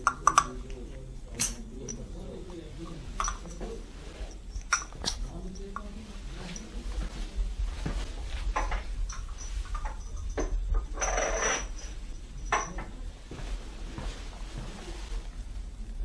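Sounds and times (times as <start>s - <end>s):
plastic cups knocking and clattering: 0.0s - 7.2s.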